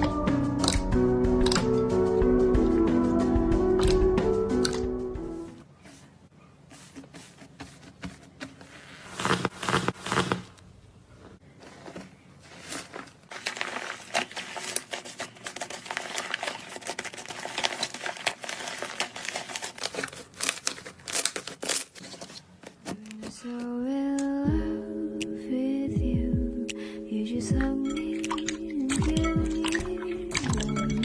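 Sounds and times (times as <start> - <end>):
slime crunching: 12.8 - 22.0.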